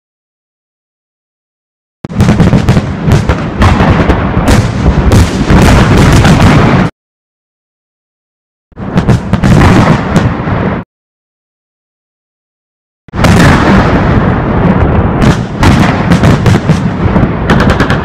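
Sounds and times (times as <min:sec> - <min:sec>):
fireworks bangs and crackles: 0:02.1 - 0:06.9, 0:08.8 - 0:10.8, 0:13.1 - 0:18.0.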